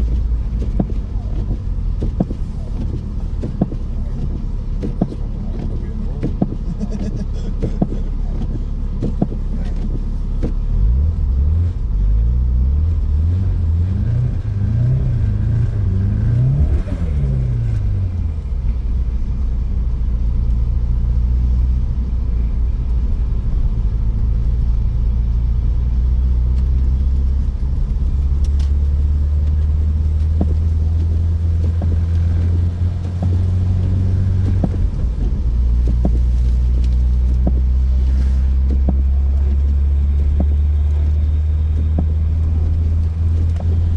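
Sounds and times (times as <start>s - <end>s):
car engine heard from cabin: 0.0s - 43.9s.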